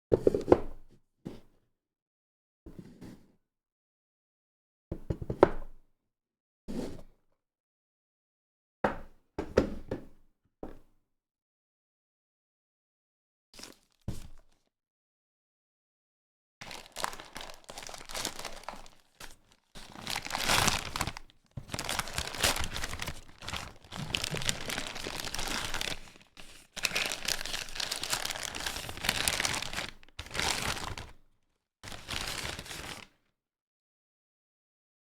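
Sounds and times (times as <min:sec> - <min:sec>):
packaging crinkling and rustling: 0:16.6 - 0:31.2, 0:31.8 - 0:33.1
packaging tearing: 0:16.6 - 0:31.2, 0:31.8 - 0:33.1.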